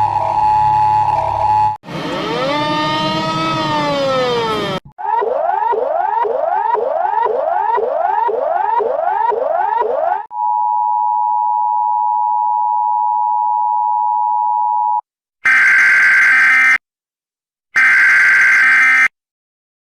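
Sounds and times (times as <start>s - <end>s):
rising electronic sweep: 1.9s - 10.2s.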